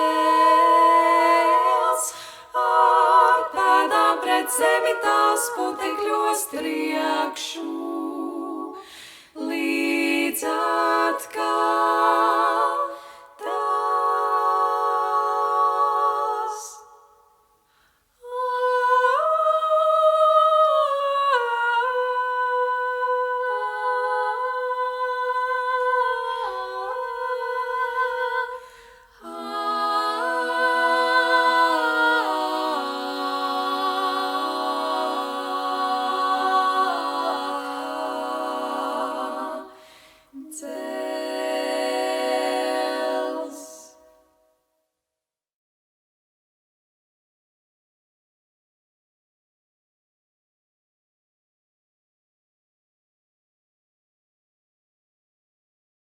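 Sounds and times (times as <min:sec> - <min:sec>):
female vocal quartet singing: 0:00.0 - 0:17.4, 0:18.2 - 0:44.4.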